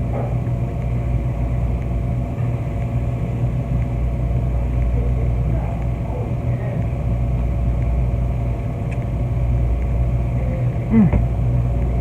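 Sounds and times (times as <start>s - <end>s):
machinery humming: 0.0s - 12.0s.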